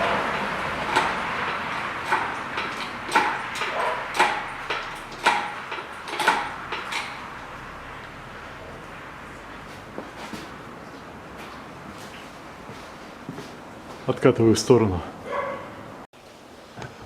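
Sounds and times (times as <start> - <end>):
sharp metallic clanks: 0.0 - 7.7.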